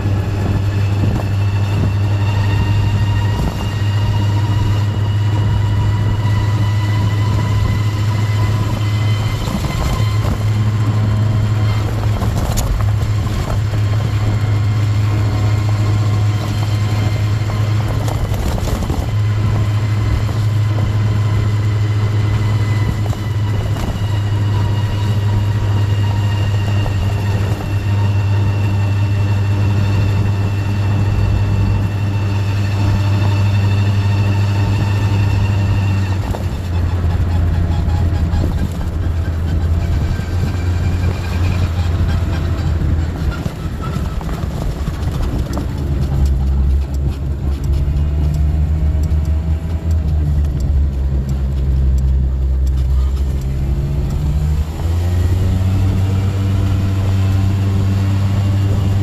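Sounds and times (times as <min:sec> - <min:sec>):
loud steady low drone: 0:00.0 - 0:59.0
road noise: 0:00.0 - 0:59.0
scooter engine: 0:00.0 - 0:59.0.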